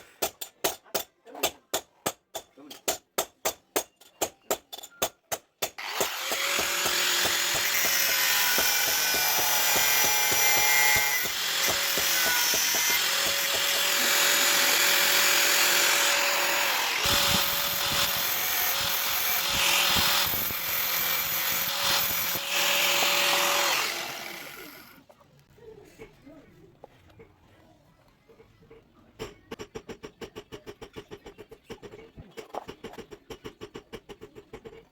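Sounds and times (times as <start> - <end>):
grinder whining on steel: 5.8 - 25.0.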